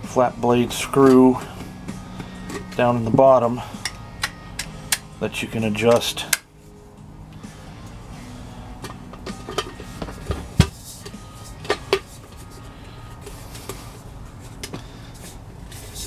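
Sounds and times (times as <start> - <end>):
steady low hum: 0.0 - 16.0
metal parts clinking: 0.7 - 5.1, 8.8 - 16.0.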